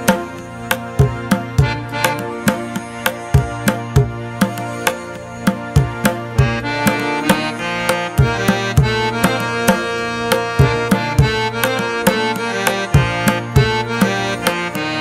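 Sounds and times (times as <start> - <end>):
sustained instrumental tones: 0.0 - 15.0
drum beat: 8.2 - 14.2.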